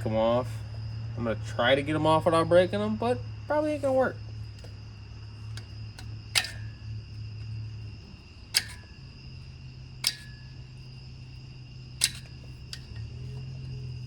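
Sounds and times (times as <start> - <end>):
sharp metallic clicks with ringing: 4.0 - 14.0.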